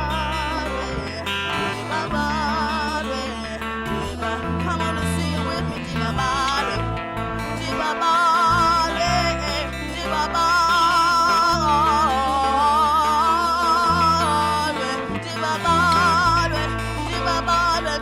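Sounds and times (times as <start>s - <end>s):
low bass notes: 0.0s - 18.0s
woman singing with vibrato: 0.0s - 18.0s.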